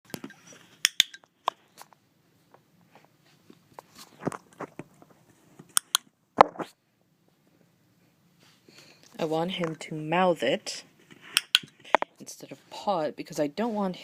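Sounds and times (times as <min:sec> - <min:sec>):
training clicker clicks: 0:11.4 - 0:12.1.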